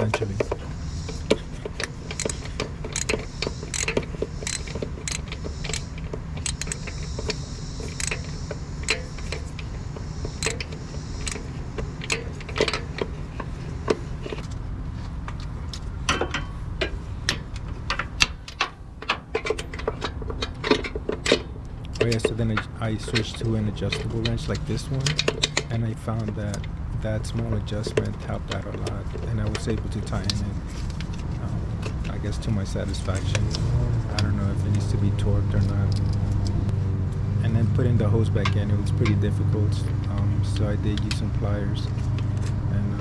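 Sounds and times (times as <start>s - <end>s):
metal tools clinking: 0.0s - 14.5s, 16.1s - 26.6s
steady low rumble: 0.0s - 18.6s, 21.4s - 43.0s.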